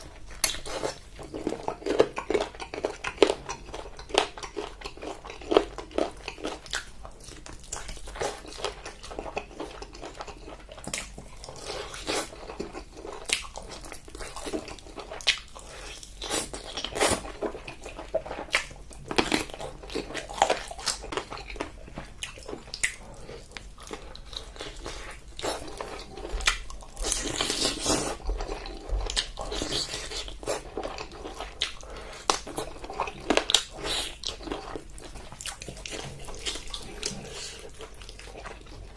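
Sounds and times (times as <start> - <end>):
crunchy chewing: 0.0 - 38.9.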